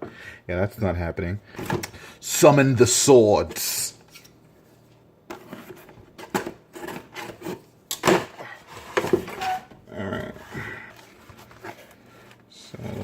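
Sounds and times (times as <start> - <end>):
cardboard and plastic packaging scraping: 5.4 - 9.7, 10.9 - 12.4.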